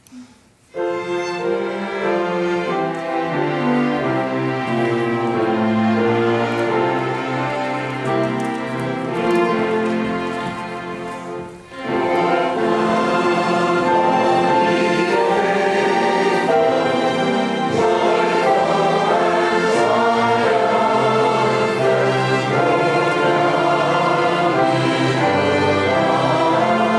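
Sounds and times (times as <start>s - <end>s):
orchestral accompaniment: 0.6s - 26.9s
choir singing: 8.9s - 26.9s.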